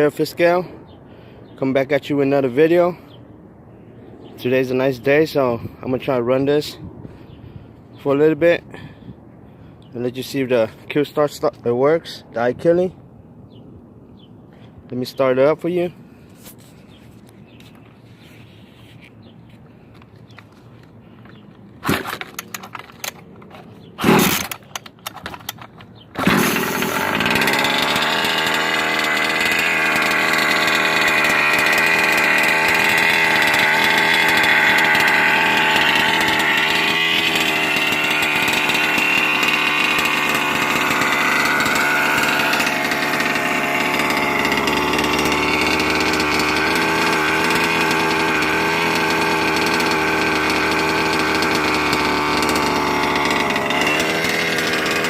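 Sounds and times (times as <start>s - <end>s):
small gas engine cranking and running: 19.7s - 55.0s.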